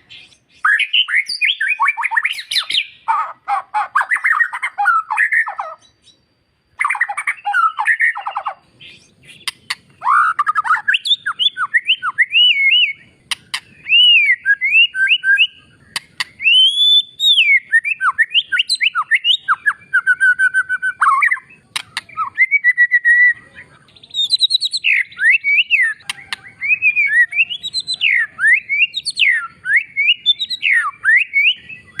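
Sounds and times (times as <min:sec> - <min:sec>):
bird singing whistles: 0:00.0 - 0:03.1, 0:04.0 - 0:32.0
sharp clicks: 0:13.3 - 0:13.7, 0:15.9 - 0:16.4, 0:21.7 - 0:22.2, 0:26.0 - 0:26.5.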